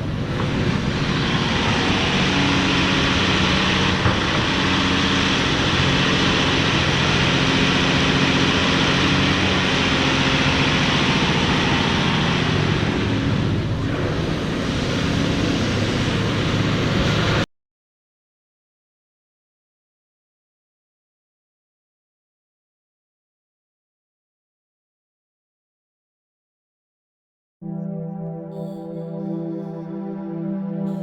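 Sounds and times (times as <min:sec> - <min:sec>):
excavator diesel engine running: 0:00.0 - 0:17.4
hydraulic and fan noise: 0:00.0 - 0:17.5.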